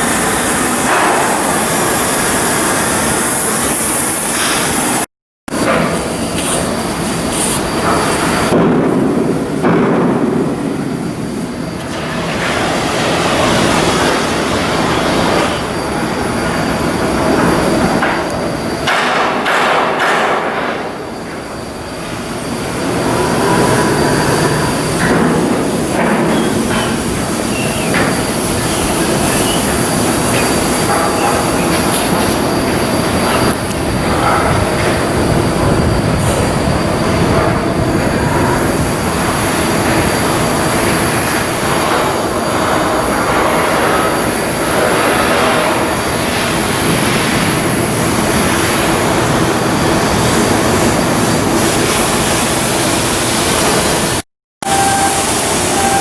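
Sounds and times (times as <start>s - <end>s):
loud machinery noise: 0.0s - 56.0s
metallic squeal: 26.3s - 37.9s, 54.6s - 56.0s.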